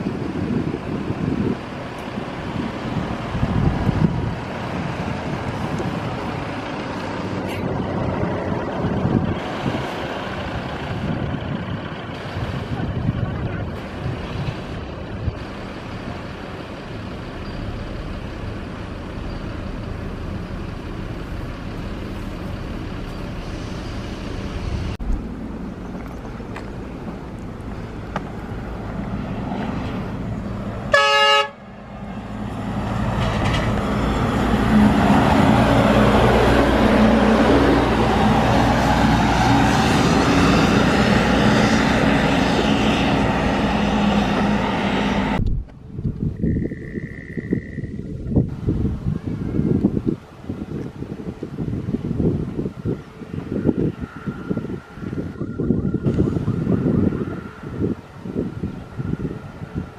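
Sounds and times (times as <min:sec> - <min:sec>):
jet engine noise: 0:00.0 - 0:59.9
short horn toot: 0:30.9 - 0:31.6.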